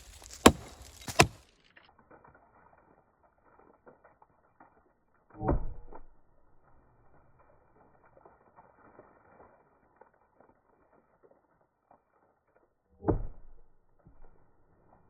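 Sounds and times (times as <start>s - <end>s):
sharp knocks: 0.4s - 1.4s.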